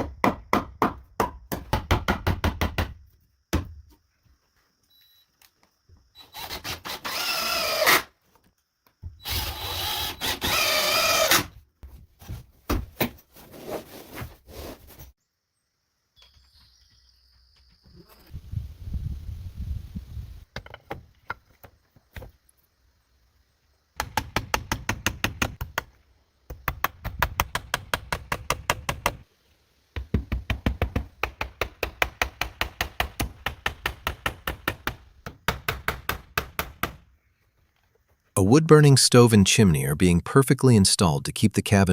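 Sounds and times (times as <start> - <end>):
knocks on wood: 30.0 - 37.0.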